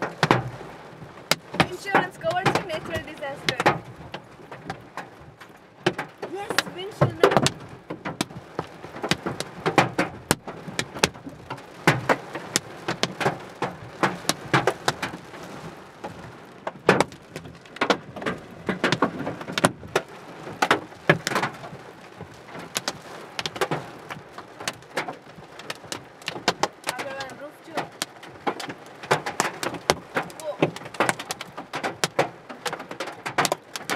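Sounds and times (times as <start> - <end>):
hailstones striking a car: 0.0 - 33.9
rain hiss: 0.0 - 33.9.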